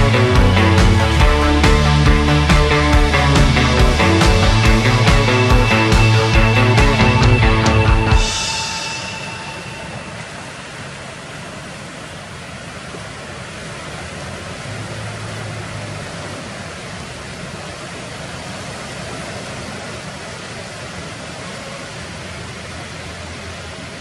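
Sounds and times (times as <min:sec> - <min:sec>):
steady rushing noise: 0:00.0 - 0:18.7.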